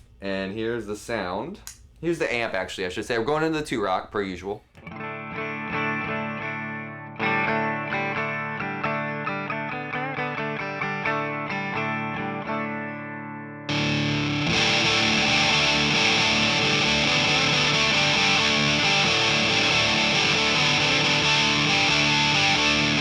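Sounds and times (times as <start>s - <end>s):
electric guitar picked notes: 4.8s - 23.0s
fuzz guitar chords: 4.8s - 23.0s.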